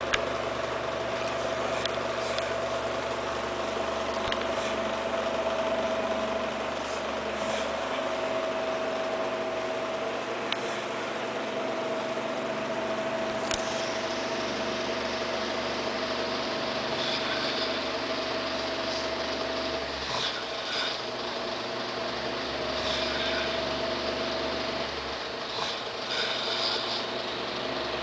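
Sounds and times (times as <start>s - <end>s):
steady machine hum: 0.0s - 28.0s.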